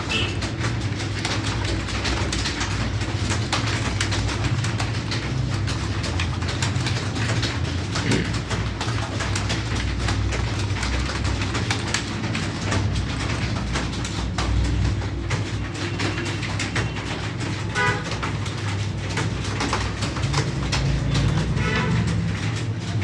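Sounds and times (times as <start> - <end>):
computer keyboards clattering: 0.0 - 23.0.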